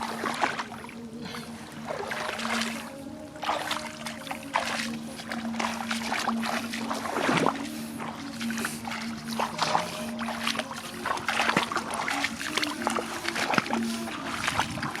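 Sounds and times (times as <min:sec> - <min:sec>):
background music with low note: 0:00.0 - 0:15.0
water splashing and trickling: 0:00.0 - 0:15.0.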